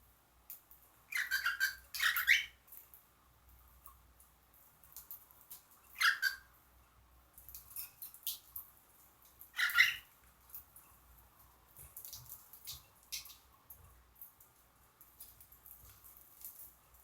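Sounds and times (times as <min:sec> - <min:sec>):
pet birds calling: 0:01.1 - 0:02.6, 0:06.0 - 0:06.4, 0:09.6 - 0:10.1.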